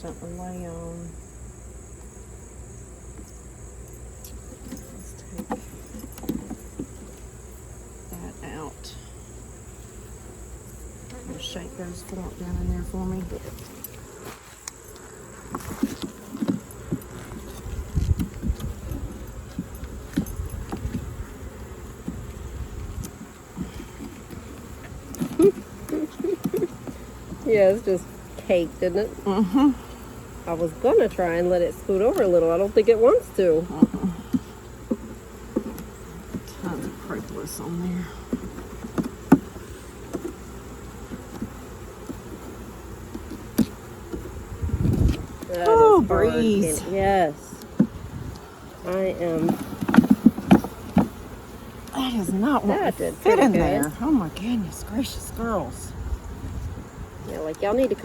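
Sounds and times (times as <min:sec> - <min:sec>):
honeybees buzzing: 0:00.0 - 0:58.0
dull knocks and thumps: 0:49.0 - 0:51.3.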